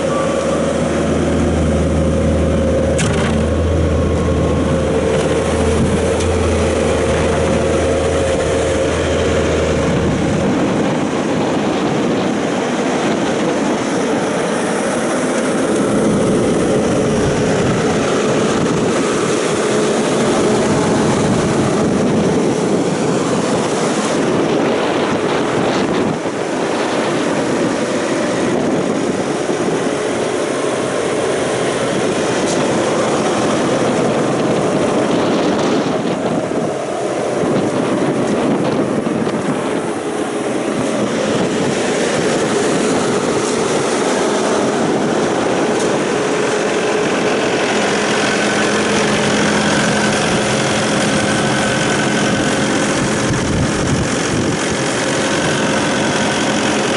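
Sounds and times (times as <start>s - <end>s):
deep low hum: 0.0s - 12.4s
diesel engine running: 0.0s - 56.9s.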